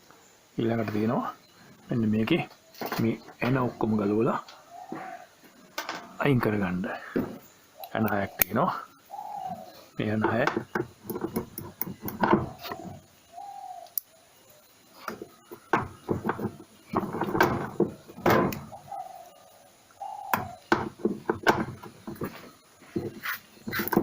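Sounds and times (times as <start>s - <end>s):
tools and metal parts clattering: 5.7s - 6.2s, 15.0s - 18.7s.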